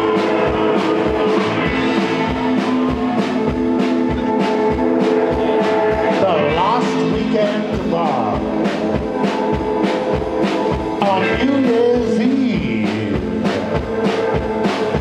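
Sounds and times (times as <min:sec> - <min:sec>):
drum kit beat: 0:00.0 - 0:15.0
guitars: 0:00.0 - 0:15.0
wavering lead guitar line: 0:00.0 - 0:15.0.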